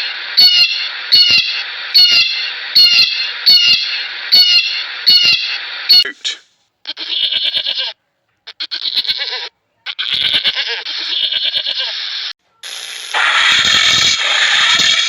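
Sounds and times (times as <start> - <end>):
goat bleating: 6.8 - 12.1
loud rough noise: 12.6 - 15.0.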